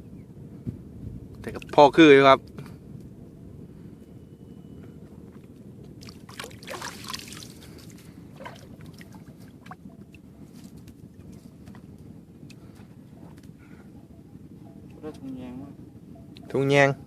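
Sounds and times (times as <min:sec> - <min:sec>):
steady low rumble: 0:00.0 - 0:17.0
water sloshing and splashing: 0:06.0 - 0:09.8.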